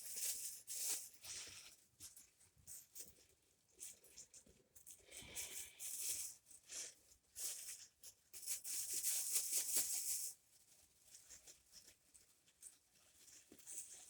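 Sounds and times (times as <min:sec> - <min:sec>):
rustling crinkling handling noise: 0:08.6 - 0:14.0.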